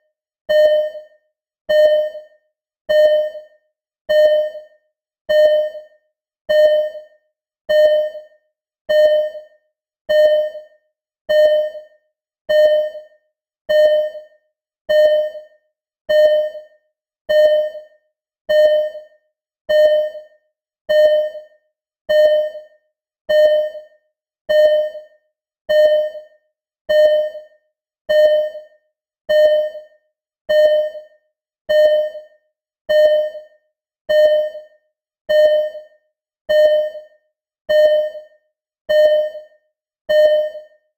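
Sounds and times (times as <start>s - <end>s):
heart monitor beeping: 0.5s - 1.1s, 1.7s - 2.3s, 2.9s - 3.5s, 4.1s - 4.7s, 5.3s - 5.9s, 6.5s - 7.1s, 7.7s - 8.3s, 8.9s - 9.5s, 10.1s - 10.7s, 11.3s - 11.9s, 12.5s - 13.1s, 13.7s - 14.3s, 14.9s - 15.5s, 16.1s - 16.7s, 17.3s - 17.9s, 18.5s - 19.1s, 19.7s - 20.3s, 20.9s - 21.5s, 22.1s - 22.7s, 23.3s - 23.9s, 24.5s - 25.1s, 25.7s - 26.3s, 26.9s - 27.5s, 28.1s - 28.7s, 29.3s - 29.9s, 30.5s - 31.1s, 31.7s - 32.3s, 32.9s - 33.5s, 34.1s - 34.7s, 35.3s - 35.9s, 36.5s - 37.1s, 37.7s - 38.3s, 38.9s - 39.5s, 40.1s - 40.8s.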